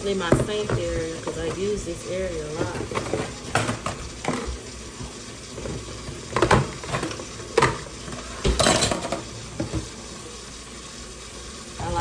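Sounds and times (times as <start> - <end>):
dishes clattering in a sink: 0.1 - 10.0
rattling scrape of dishes: 5.6 - 9.8.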